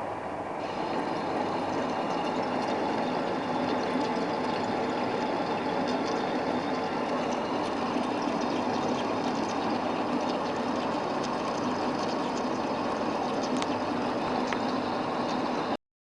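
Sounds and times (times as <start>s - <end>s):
lathe motor running: 0.5s - 15.8s
faint clicks: 13.4s - 13.8s.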